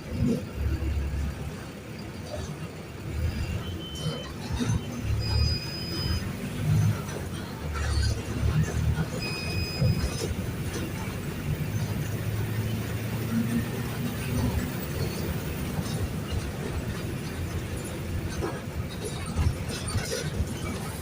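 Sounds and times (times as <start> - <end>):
bus diesel engine: 0.0 - 21.0
short high squeals: 3.5 - 6.4.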